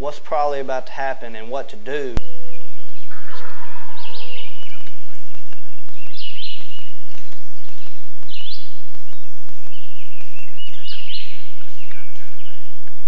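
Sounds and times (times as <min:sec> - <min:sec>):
steady background hiss: 0:00.0 - 0:03.1
songbirds calling: 0:00.0 - 0:13.0.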